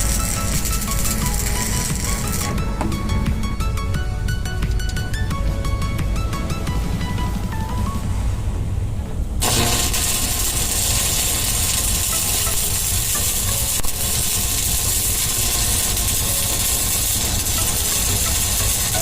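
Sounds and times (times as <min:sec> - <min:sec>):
welding arc hissing: 0:00.0 - 0:02.6, 0:09.4 - 0:19.0.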